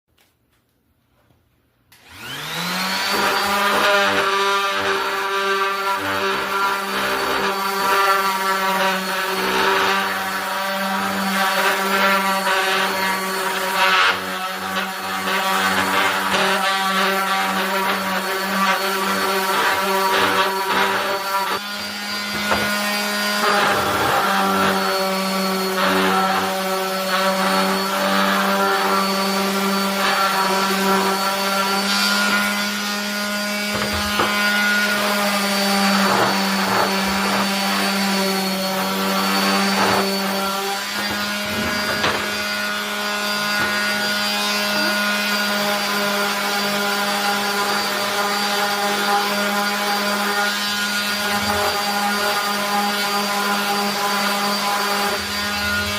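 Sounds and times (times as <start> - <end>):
power sander on wood: 1.9 - 55.9.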